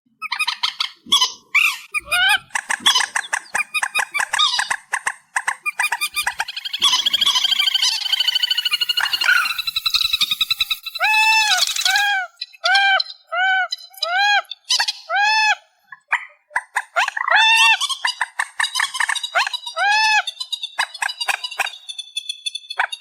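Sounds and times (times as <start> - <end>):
bird calls rising and falling: 1.6 - 13.3
rapid ticking bird calls: 1.8 - 13.2
thin high bird trill: 5.7 - 12.6.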